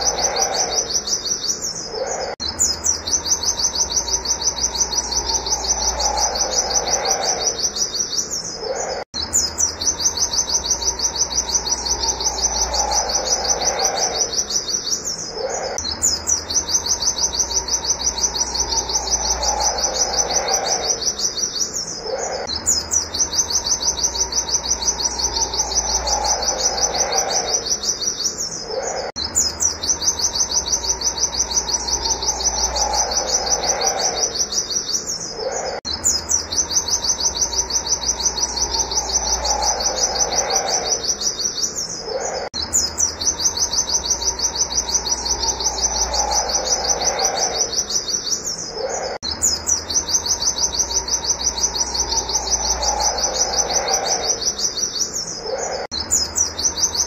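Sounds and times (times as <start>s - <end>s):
bird rapid high chirps: 0.0s - 57.0s.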